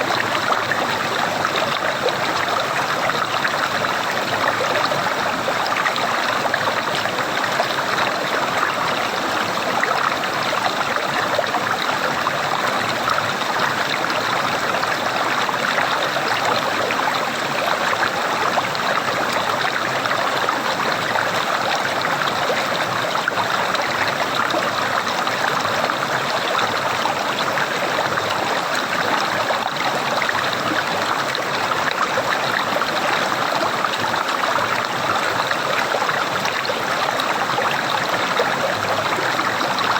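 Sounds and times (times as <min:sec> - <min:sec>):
gurgling trickling water: 0:00.0 - 0:39.9.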